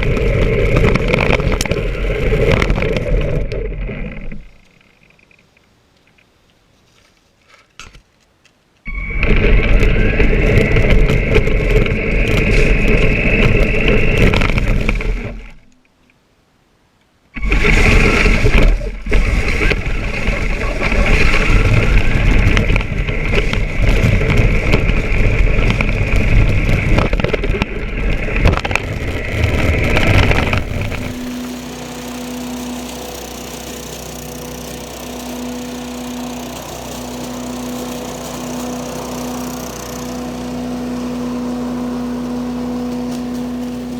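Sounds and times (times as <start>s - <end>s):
electric toy truck motor whine: 8.9s - 15.1s, 29.0s - 43.9s
tyre noise: 17.4s - 31.4s.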